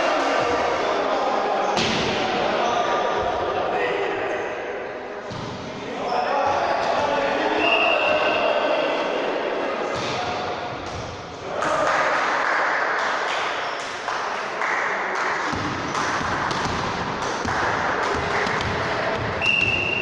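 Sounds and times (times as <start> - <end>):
players shouting: 5.8 - 10.2
ball bouncing: 15.5 - 19.8
referee's whistle blast: 19.4 - 20.0.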